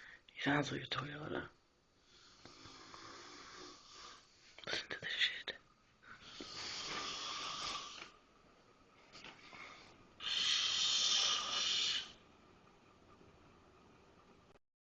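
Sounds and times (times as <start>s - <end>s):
man snoring loudly: 2.5s - 4.2s, 6.4s - 8.0s, 10.2s - 12.2s.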